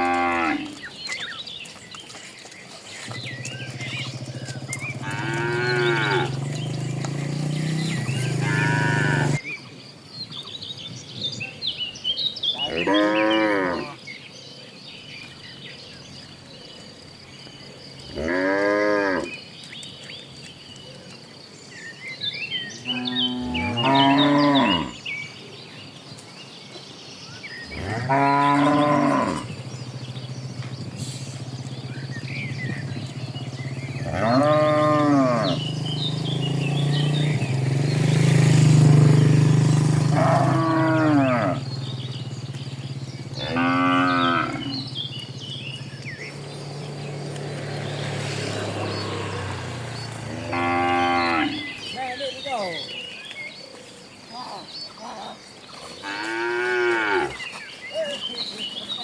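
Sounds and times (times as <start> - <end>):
cattle mooing loudly: 0.0 - 0.8, 3.8 - 9.4, 12.6 - 14.0, 18.1 - 19.4, 22.8 - 25.0, 27.7 - 29.6, 32.7 - 37.4, 38.1 - 41.9, 43.3 - 44.9, 46.3 - 51.8, 56.0 - 57.6
low drawn-out moo: 0.0 - 0.8, 4.4 - 9.4, 12.6 - 14.0, 18.1 - 19.4, 22.8 - 25.0, 27.6 - 29.7, 31.0 - 42.1, 43.3 - 45.1, 46.3 - 51.8, 56.0 - 57.4.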